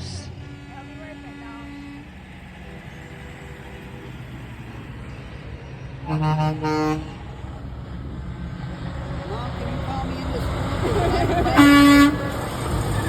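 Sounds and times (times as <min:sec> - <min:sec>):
truck engines rumbling: 0:00.0 - 0:13.0
truck air horn blasting: 0:00.7 - 0:04.0, 0:06.0 - 0:07.3, 0:11.5 - 0:12.3.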